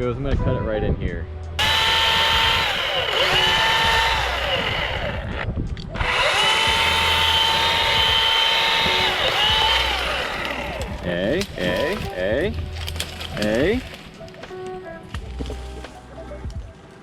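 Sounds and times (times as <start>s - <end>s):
electric chainsaw cutting wood: 1.6s - 12.2s.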